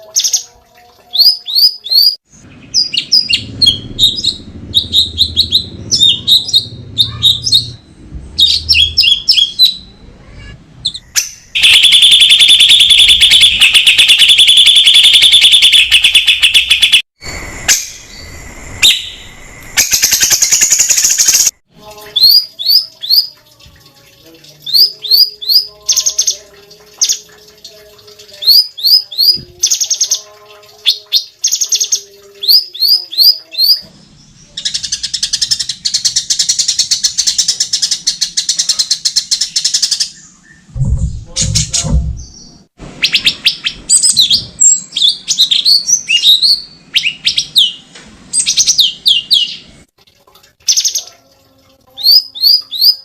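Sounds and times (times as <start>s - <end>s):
songbird singing: 1.1s - 10.1s, 24.6s - 49.7s
low thump: 40.7s - 42.3s.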